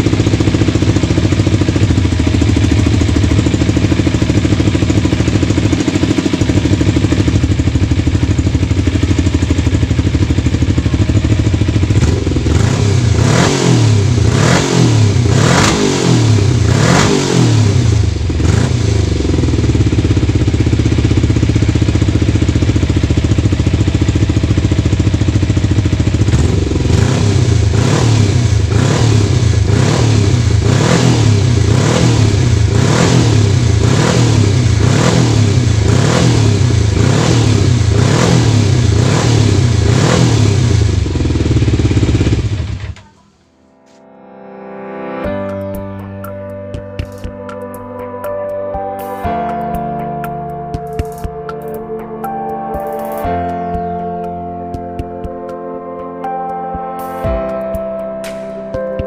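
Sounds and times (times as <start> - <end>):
motorcycle engine revving: 0.0 - 43.2.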